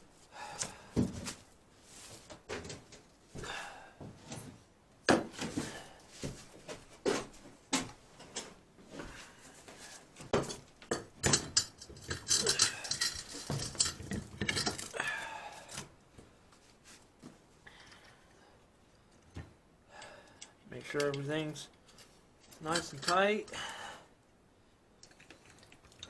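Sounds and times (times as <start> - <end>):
metal tools clinking and knocking: 10.4 - 15.1, 20.0 - 23.6.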